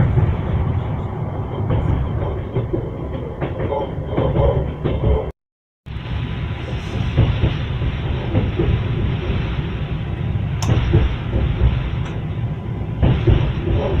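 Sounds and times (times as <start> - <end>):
train wheels rumbling over rails: 0.0 - 5.3, 5.9 - 14.0.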